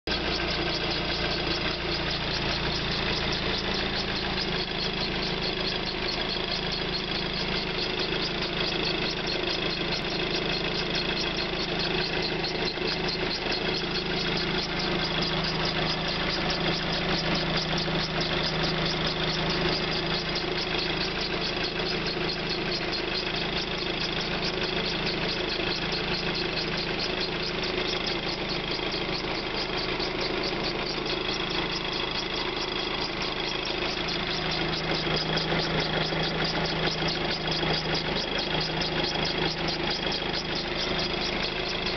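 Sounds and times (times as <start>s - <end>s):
car engine idling: 0.1s - 41.9s
rapid even ticking: 0.1s - 41.9s.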